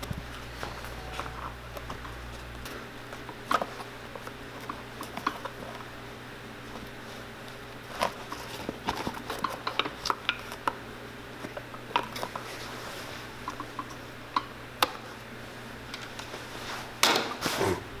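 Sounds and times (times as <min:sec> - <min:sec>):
steady low hum: 0:00.0 - 0:08.8.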